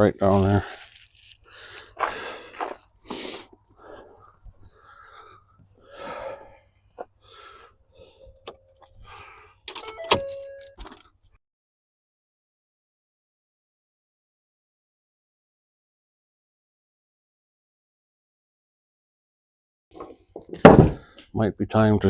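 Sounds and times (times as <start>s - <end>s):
rustling: 0.3s - 2.0s
light metallic jingling: 9.6s - 11.2s.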